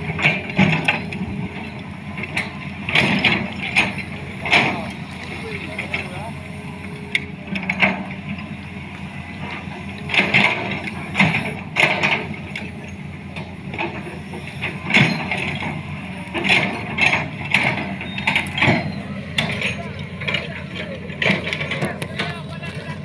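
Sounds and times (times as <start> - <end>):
diesel engine running: 0.0 - 23.0
metallic clanks and squeals: 0.0 - 23.0.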